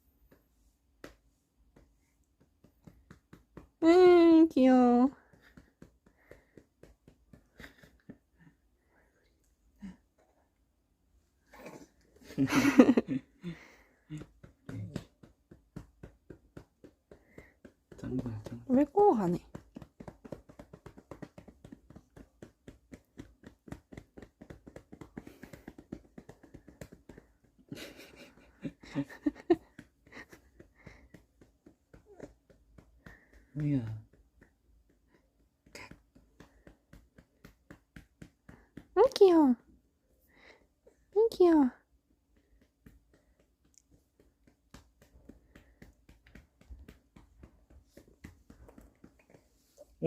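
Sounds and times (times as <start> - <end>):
hand patting baby's back: 14.1 - 39.3.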